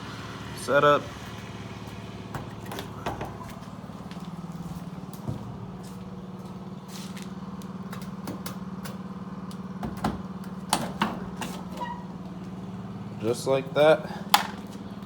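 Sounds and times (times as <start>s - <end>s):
low mechanical hum: 0.0s - 15.0s
fasteners clicking and knocking: 9.8s - 11.7s.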